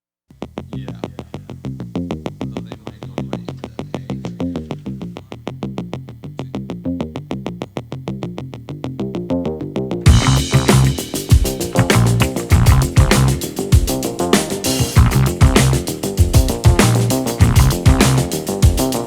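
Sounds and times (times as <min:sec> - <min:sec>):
electronic music with ticking beat: 0:10.1 - 0:19.0.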